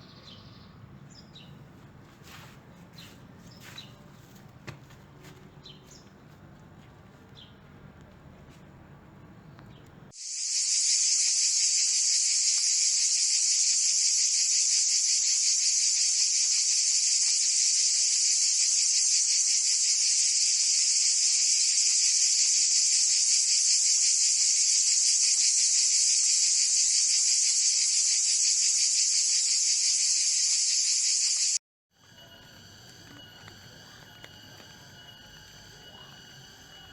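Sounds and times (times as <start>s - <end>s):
high-pitched insect buzz: 10.2s - 36.9s.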